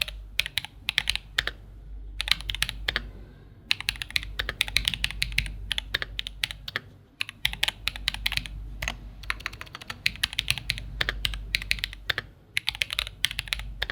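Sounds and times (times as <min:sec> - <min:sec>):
mechanical keyboard keystroke clacks: 0:00.0 - 0:01.6, 0:02.2 - 0:03.1, 0:03.7 - 0:13.9.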